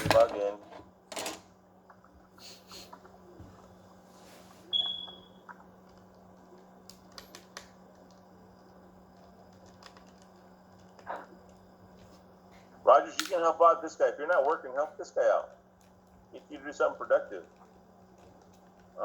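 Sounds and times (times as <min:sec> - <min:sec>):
steady low hum: 0:00.0 - 0:19.0
computer keys typing: 0:09.2 - 0:11.6.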